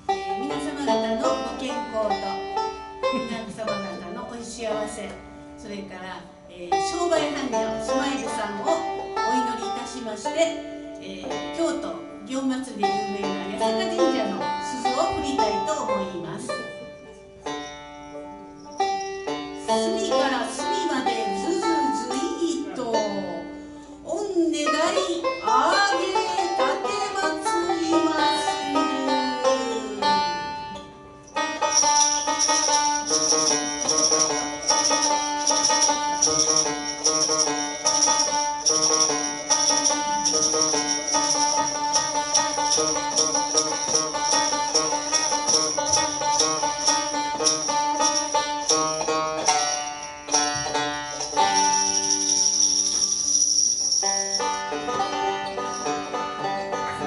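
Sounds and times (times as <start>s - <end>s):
plucked string instrument playing: 0.0s - 5.6s, 12.8s - 23.6s, 25.2s - 57.0s.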